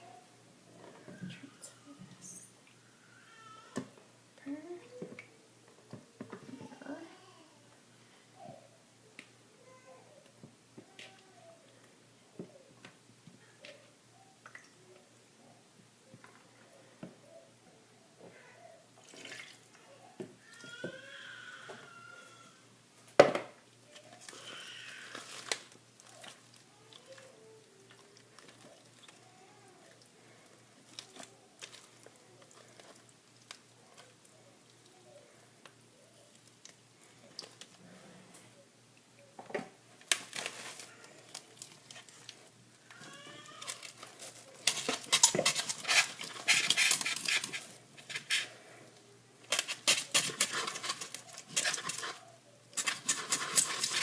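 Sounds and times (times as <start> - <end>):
utensils clattering and scraping: 43.7 - 48.5, 49.5 - 54.0.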